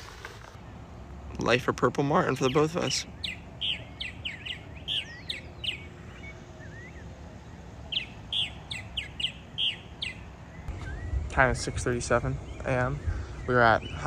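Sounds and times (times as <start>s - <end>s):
birds chirping and gurgling: 2.2s - 7.1s, 7.9s - 14.0s.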